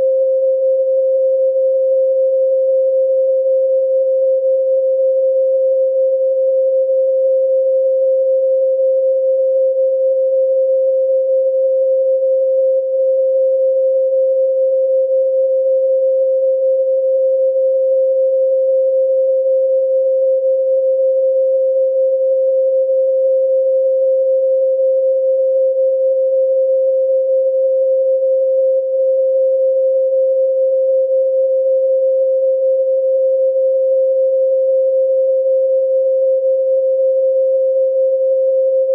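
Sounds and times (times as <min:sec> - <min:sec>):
steady pure sine tone: 0:00.0 - 0:38.9.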